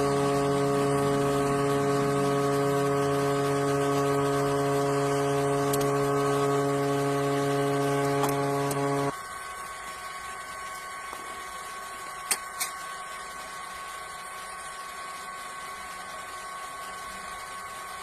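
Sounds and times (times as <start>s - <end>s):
machine hum with whine: 0.0s - 18.0s.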